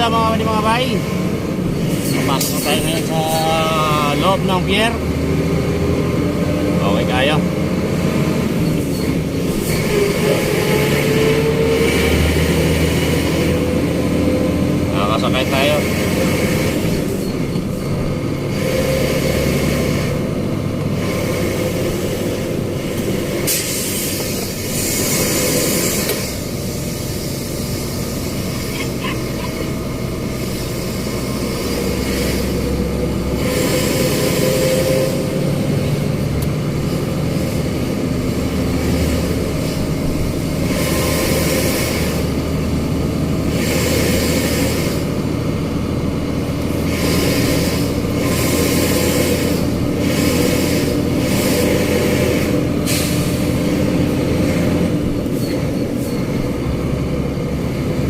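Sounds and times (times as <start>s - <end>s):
truck diesel engine running: 0.0s - 58.0s
hissing noise: 23.4s - 29.5s.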